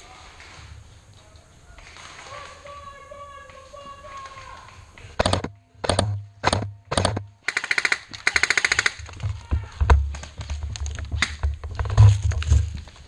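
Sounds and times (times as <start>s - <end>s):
airsoft gun shots: 5.2s - 9.0s.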